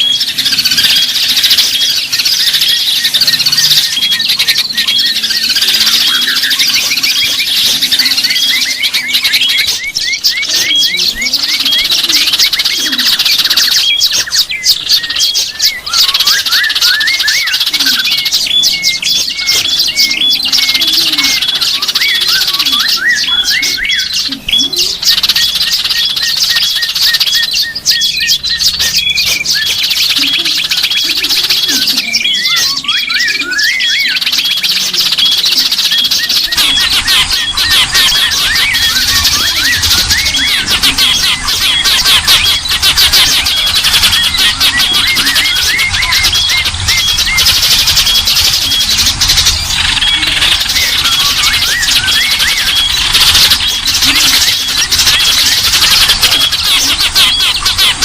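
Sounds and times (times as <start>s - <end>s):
songbirds chirping: 0.0s - 58.0s.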